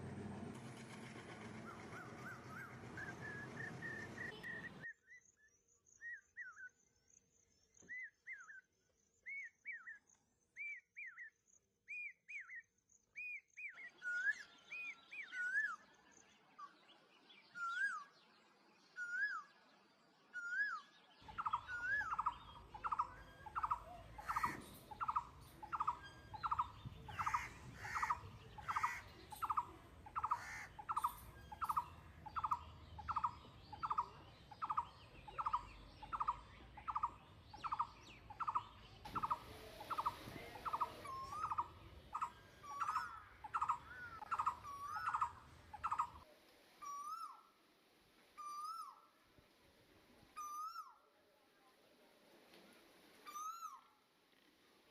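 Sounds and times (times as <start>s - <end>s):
bird whistled calls: 1.9s - 4.9s, 20.4s - 46.2s, 48.4s - 49.0s
background hiss: 39.1s - 46.8s.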